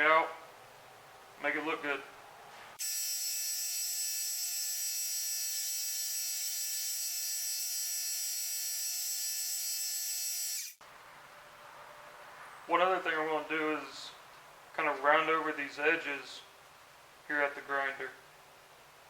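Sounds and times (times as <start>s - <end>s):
belt grinder whining: 2.8s - 10.8s.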